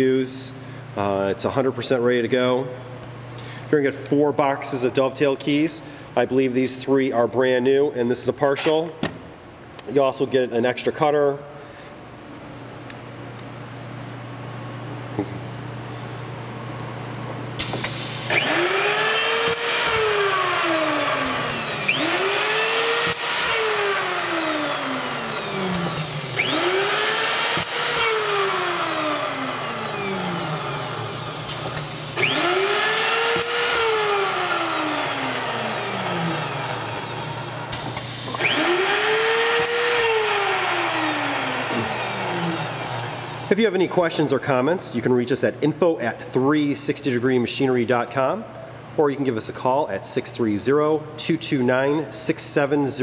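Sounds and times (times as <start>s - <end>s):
steady low hum: 0.0s - 18.9s, 19.5s - 39.0s
router cutter whirring: 17.6s - 43.5s.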